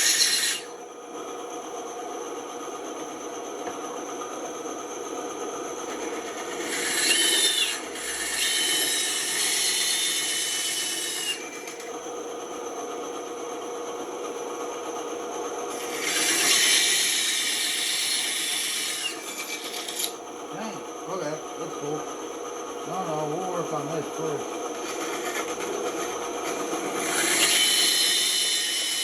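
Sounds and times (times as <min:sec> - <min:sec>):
band saw cutting wood: 0:00.0 - 0:00.8, 0:05.9 - 0:12.0, 0:15.7 - 0:22.0, 0:22.9 - 0:29.0
faint high whine: 0:19.8 - 0:25.4.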